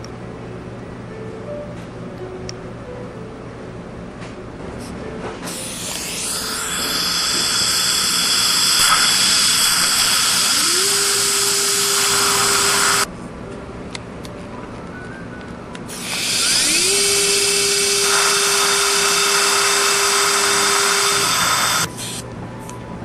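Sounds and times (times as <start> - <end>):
dental drill whine: 5.5 - 13.1, 15.9 - 22.2.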